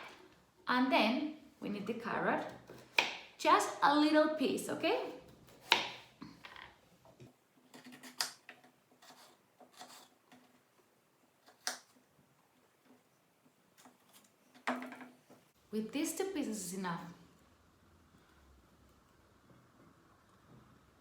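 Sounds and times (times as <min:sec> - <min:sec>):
knife cutting carrot: 0:05.5 - 0:06.1, 0:07.7 - 0:10.2.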